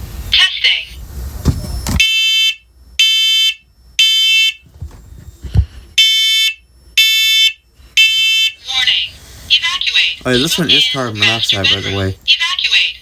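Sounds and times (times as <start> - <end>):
smoke alarm beeping: 1.6 - 4.8, 5.4 - 12.9.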